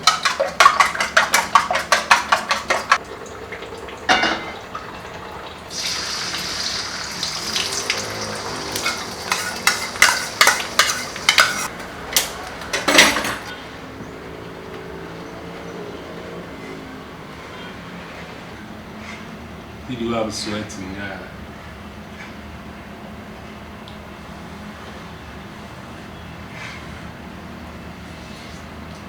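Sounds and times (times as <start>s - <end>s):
utensil scraping a pan: 0.0s - 3.0s, 5.8s - 11.7s
food frying in hot oil: 2.9s - 11.7s.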